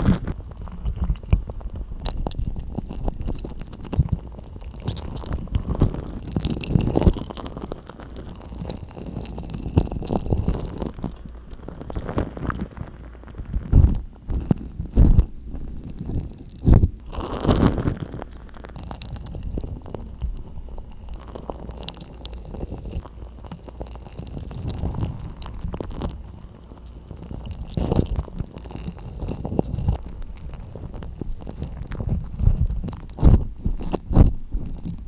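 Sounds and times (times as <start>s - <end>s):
slime squelching: 15.7s - 35.0s.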